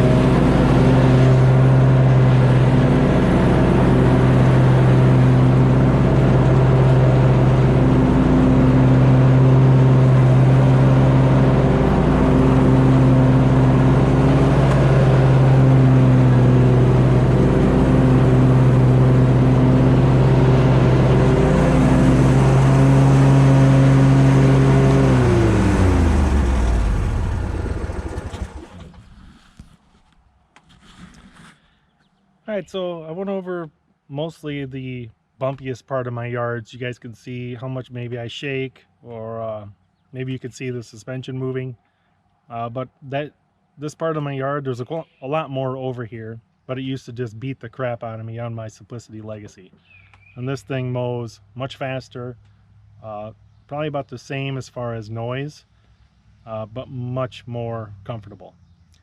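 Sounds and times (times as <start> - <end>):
mower engine running: 0.0 - 29.7.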